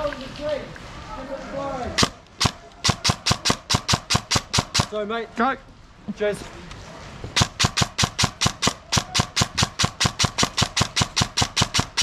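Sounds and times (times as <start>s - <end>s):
airsoft gun shots: 2.0s - 5.0s, 7.4s - 12.0s.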